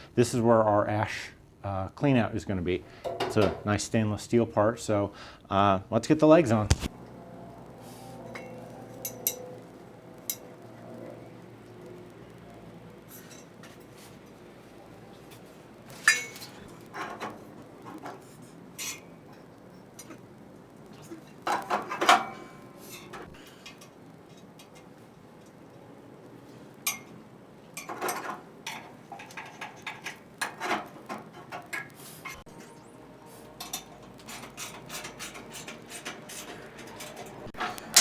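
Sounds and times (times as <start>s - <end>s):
metal parts clanking and clinking: 15.9s - 20.2s, 21.0s - 24.9s, 27.8s - 32.8s, 33.5s - 38.0s.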